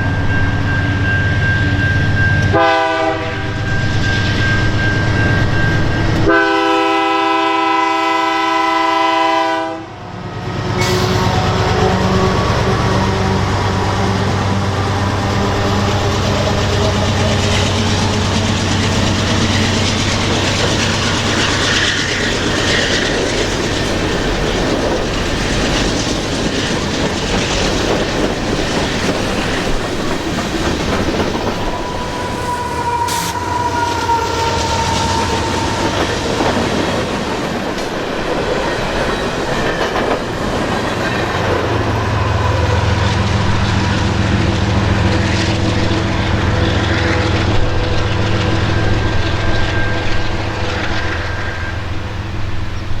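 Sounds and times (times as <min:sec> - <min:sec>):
train wheel squeal: 0:00.0 - 0:08.0, 0:10.2 - 0:53.0
freight train rumble: 0:00.0 - 0:53.0
train wheels clacking over rail joints: 0:15.4 - 0:32.1, 0:34.6 - 0:42.0.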